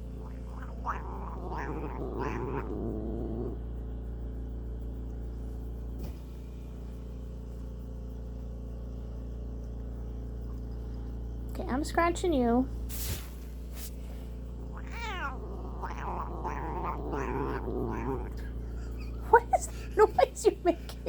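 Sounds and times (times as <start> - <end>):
cat making rough vocal noise: 0.0 - 3.7, 14.7 - 19.2
low steady hum: 0.0 - 21.0.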